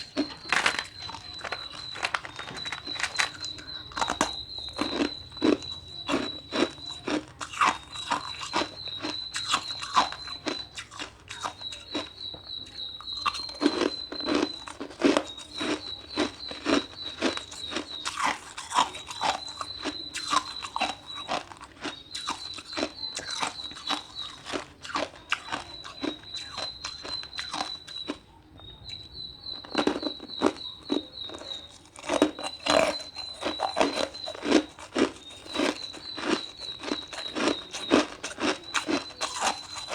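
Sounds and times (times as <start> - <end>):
ice crunching being chewed: 0.0 - 39.9.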